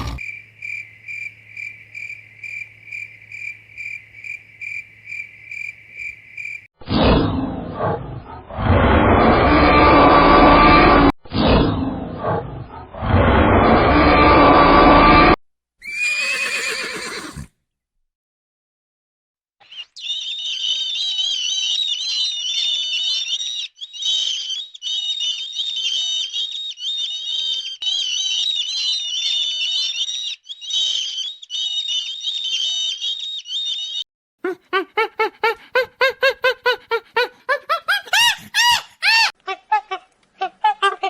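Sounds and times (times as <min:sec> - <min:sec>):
animal rapid short calls: 0:00.0 - 0:00.3
small birds chirping: 0:19.6 - 0:34.0.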